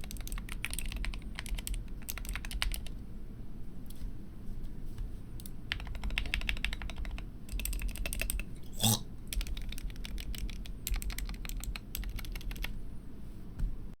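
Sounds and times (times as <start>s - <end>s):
typing on keyboard: 0.0s - 3.0s, 5.4s - 8.5s, 9.3s - 12.8s.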